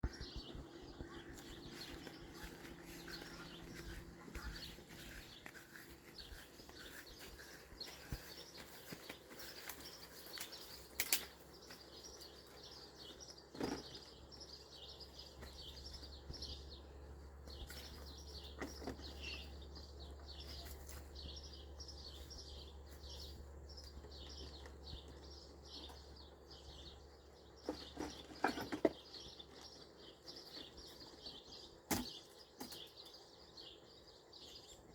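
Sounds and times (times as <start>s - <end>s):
faint low hum: 0.0s - 13.3s.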